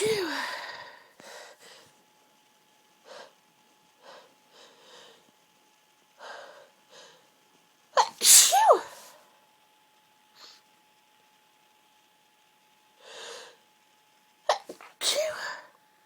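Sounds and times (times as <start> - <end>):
woman sneezing: 0.0 - 0.7, 8.0 - 9.1, 14.5 - 15.7.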